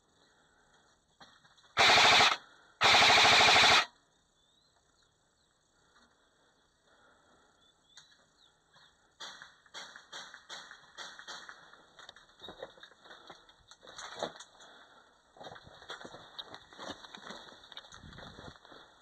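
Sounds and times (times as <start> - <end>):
airsoft rifle full-auto bursts: 1.8 - 4.0.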